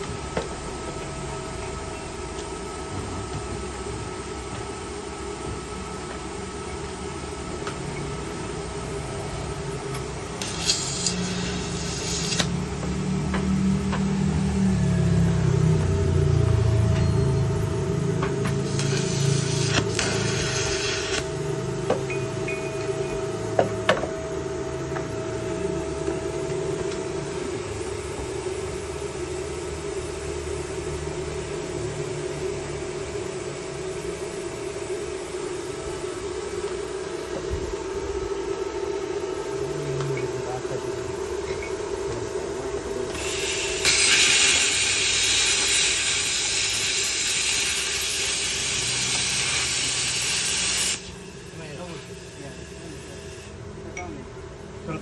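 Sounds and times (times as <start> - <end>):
plasma cutter humming: 0.0 - 54.2
cutting arc hissing: 7.8 - 15.4, 18.4 - 23.2, 43.0 - 53.6.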